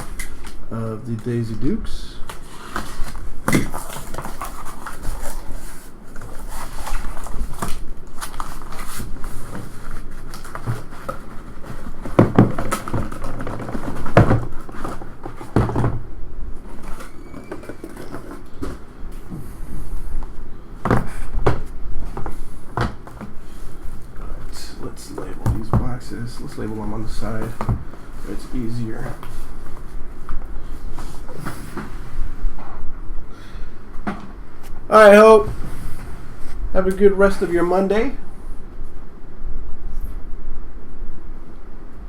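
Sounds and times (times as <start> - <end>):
cardboard rustling and scraping: 2.3 - 16.0, 16.6 - 19.8, 20.8 - 32.8, 35.0 - 38.2
boxes knocking on table: 12.0 - 16.0.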